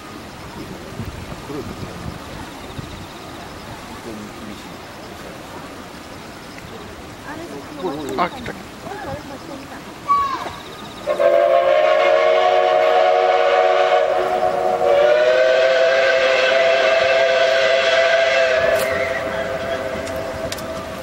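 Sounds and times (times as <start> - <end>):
steam train whistles chord: 11.1 - 20.6.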